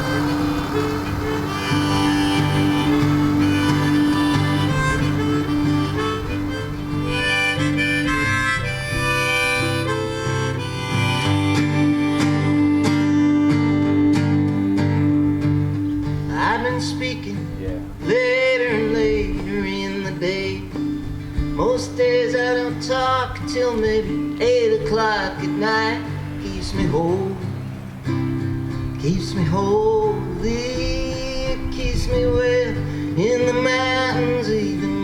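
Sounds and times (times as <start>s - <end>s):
harmonica melody: 0.0s - 14.0s
strummed acoustic guitar: 0.0s - 35.0s.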